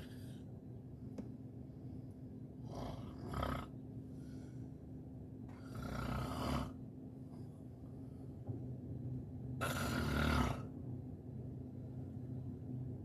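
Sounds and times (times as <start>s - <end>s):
steady low hum: 0.0s - 13.0s
snoring: 2.6s - 3.7s, 5.5s - 6.8s, 9.6s - 10.7s.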